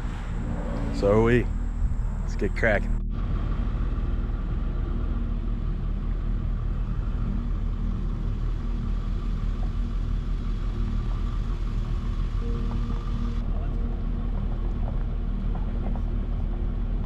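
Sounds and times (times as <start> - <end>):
faint even hum: 0.0 - 3.0
car road and engine rumble: 0.0 - 17.0.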